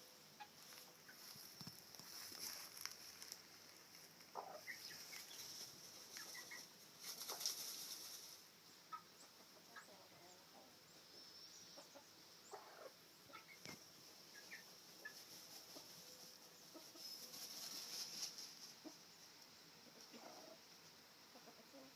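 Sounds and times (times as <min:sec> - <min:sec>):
rustle: 0:00.0 - 0:21.9
hen clucking softly: 0:00.2 - 0:01.3, 0:04.3 - 0:05.5, 0:06.1 - 0:07.7, 0:08.8 - 0:11.0, 0:11.7 - 0:17.4, 0:19.8 - 0:21.9
chicks peeping: 0:04.0 - 0:07.7, 0:08.8 - 0:11.0, 0:11.7 - 0:19.1.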